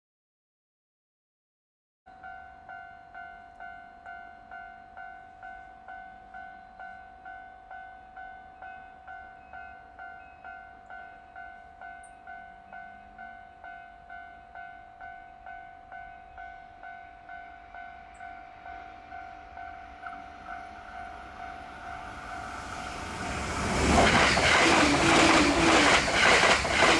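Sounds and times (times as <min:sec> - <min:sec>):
approaching train rushing: 0:16.8 - 0:26.9.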